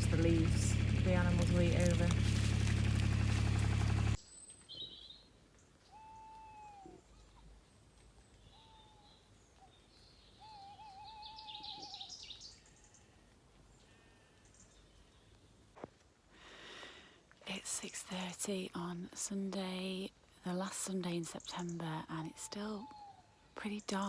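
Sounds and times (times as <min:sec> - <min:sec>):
owl hooting: 0:05.9 - 0:07.0, 0:10.4 - 0:12.0.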